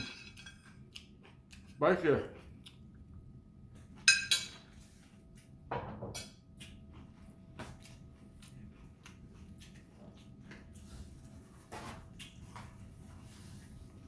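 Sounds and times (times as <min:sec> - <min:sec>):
person eating crunchily: 0:00.7 - 0:03.0
utensil clinking against bowl: 0:04.0 - 0:04.6.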